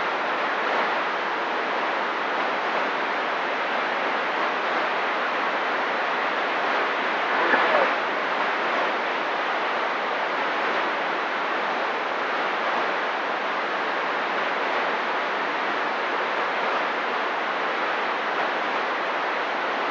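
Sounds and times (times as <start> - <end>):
radio static hiss: 6.9 - 8.2.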